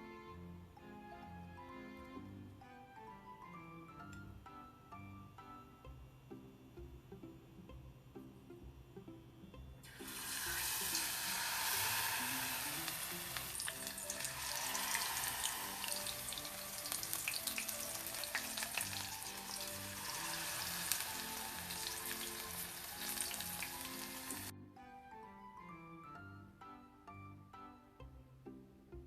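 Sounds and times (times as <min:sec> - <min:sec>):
food sizzling in hot oil: 0:09.8 - 0:24.5.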